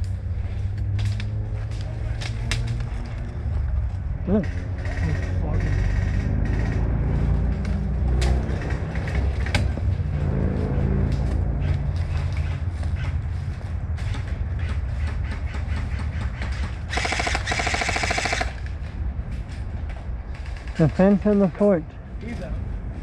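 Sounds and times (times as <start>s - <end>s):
steady low rumble: 0.0s - 23.0s
sharp cracks: 14.0s - 19.7s
airsoft gun full-auto burst: 16.9s - 18.5s.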